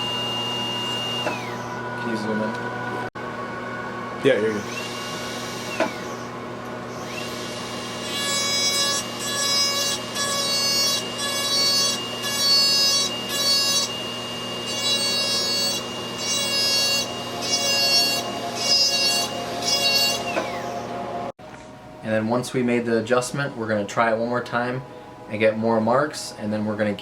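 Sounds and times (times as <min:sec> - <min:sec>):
dental drill whining: 0:00.0 - 0:02.6, 0:04.2 - 0:21.3
drill grinding resin: 0:04.4 - 0:21.0.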